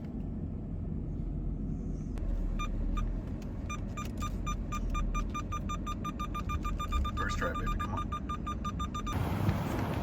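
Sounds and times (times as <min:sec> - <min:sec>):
truck engine rumbling: 0:00.0 - 0:10.0
parking sensor beeping: 0:02.5 - 0:09.3.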